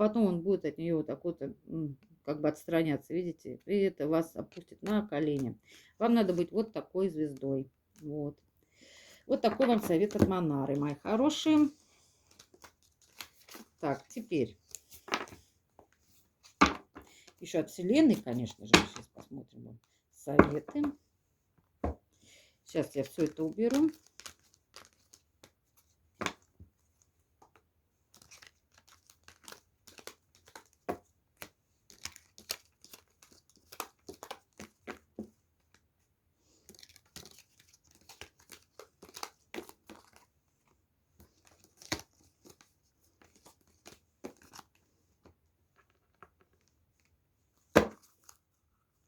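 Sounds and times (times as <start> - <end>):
cards being shuffled: 9.4 - 17.1, 23.0 - 35.8, 36.5 - 47.1.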